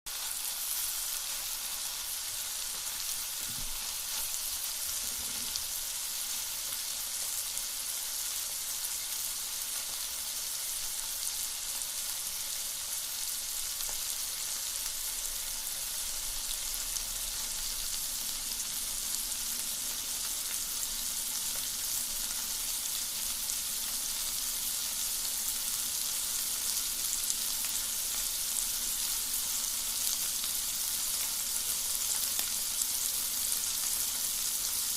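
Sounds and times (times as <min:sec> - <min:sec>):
meat sizzling over wood fire: 0:00.1 - 0:34.9.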